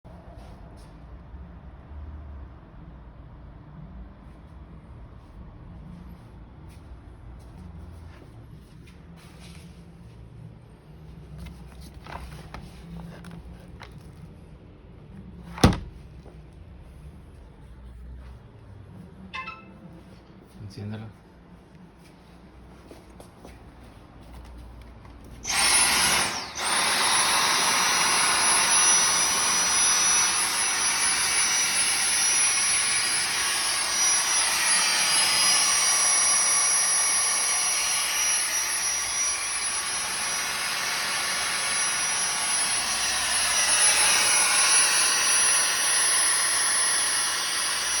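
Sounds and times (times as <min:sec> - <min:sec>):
vacuum cleaner motor whine: 0:25.4 - 0:48.0.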